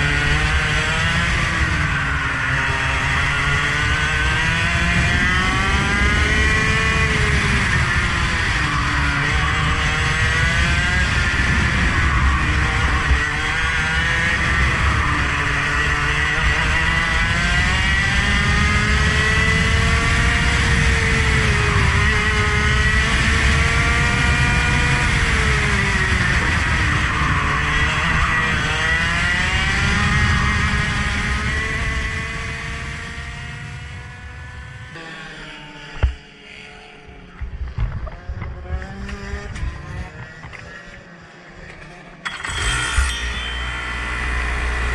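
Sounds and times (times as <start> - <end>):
racing engine revving: 0.0 - 44.9.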